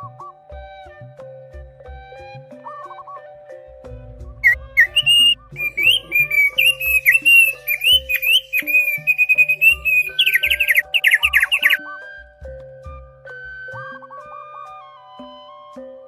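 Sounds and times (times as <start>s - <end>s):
background music with low beat: 4.0s - 11.8s
songbird singing: 4.4s - 11.8s.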